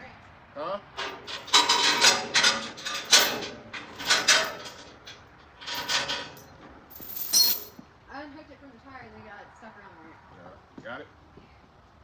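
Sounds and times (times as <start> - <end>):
metal chain rattling and clanking: 1.0 - 7.8.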